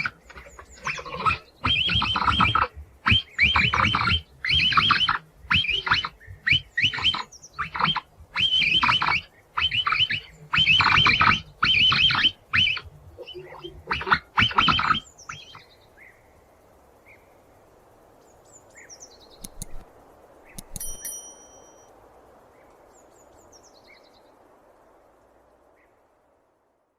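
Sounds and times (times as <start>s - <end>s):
capybara high-pitched calls: 0.0s - 15.6s
faint background hiss: 0.0s - 26.9s
bird chirps: 18.8s - 19.8s, 20.5s - 21.9s.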